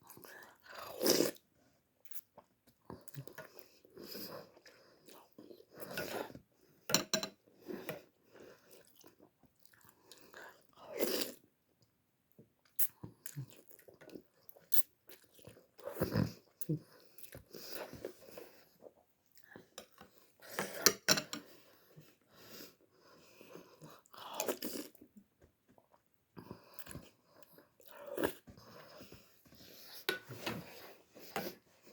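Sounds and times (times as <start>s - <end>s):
person chewing noodles: 8.2s - 11.4s, 12.7s - 20.3s.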